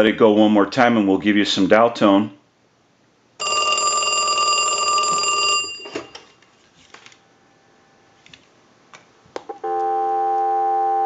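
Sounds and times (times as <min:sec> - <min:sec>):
telephone dial tone: 0:03.4 - 0:06.0, 0:09.6 - 0:11.0.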